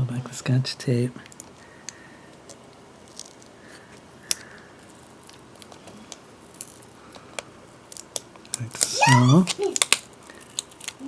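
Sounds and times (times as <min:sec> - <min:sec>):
tape being peeled back: 0:06.5 - 0:11.0.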